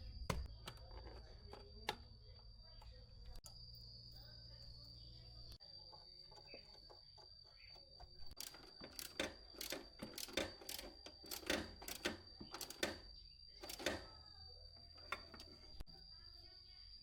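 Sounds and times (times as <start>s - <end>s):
sharp clicks and knocks: 8.3s - 14.1s.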